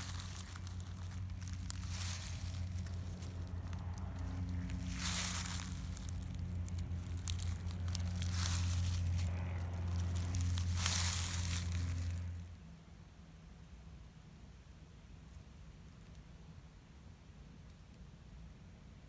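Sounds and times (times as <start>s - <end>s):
rustling and crinkling: 0.0s - 12.5s
steady low hum: 0.0s - 13.0s.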